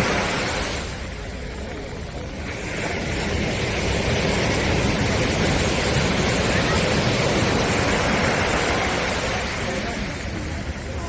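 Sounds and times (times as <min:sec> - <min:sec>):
waves breaking on a beach: 0:00.0 - 0:11.0.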